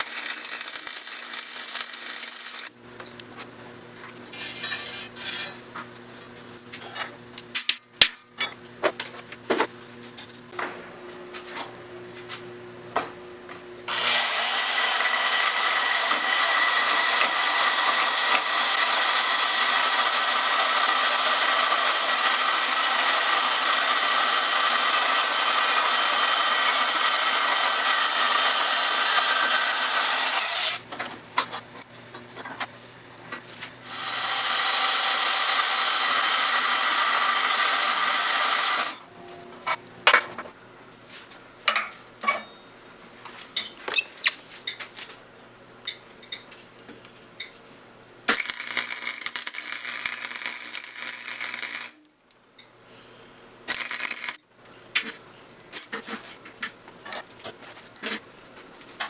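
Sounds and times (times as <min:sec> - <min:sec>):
electric power tool running: 0:00.0 - 0:02.7, 0:13.9 - 0:30.8, 0:33.8 - 0:39.1, 0:48.3 - 0:52.0, 0:53.7 - 0:54.4
high-pitched tool running: 0:00.0 - 0:02.7, 0:13.9 - 0:30.8, 0:33.8 - 0:39.1, 0:48.3 - 0:52.0, 0:53.7 - 0:54.4.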